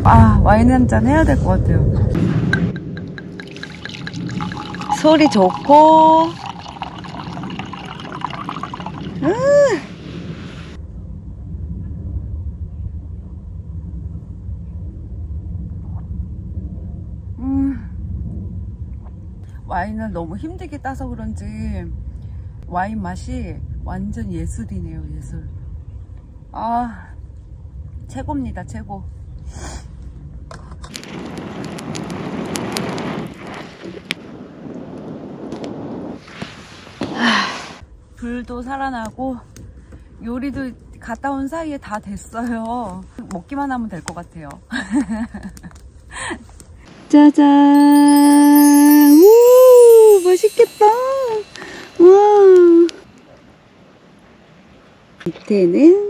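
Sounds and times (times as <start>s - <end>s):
low outdoor rumble: 0.0s - 35.4s, 37.1s - 47.6s
wood fire crackling and popping: 30.8s - 35.8s.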